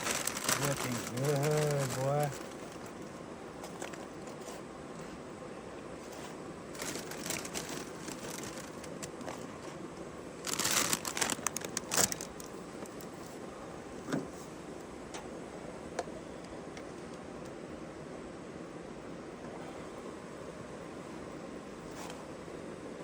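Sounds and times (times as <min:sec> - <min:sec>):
fire hissing and crackling: 0:00.0 - 0:03.8, 0:06.0 - 0:13.4
crinkling and rustling: 0:00.0 - 0:04.6, 0:06.0 - 0:09.8, 0:10.4 - 0:13.4.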